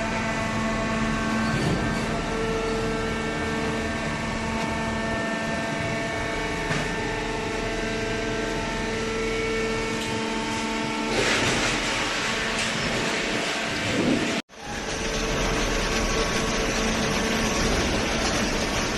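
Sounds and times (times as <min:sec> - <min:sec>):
baler machine humming: 0:12.1 - 0:18.9.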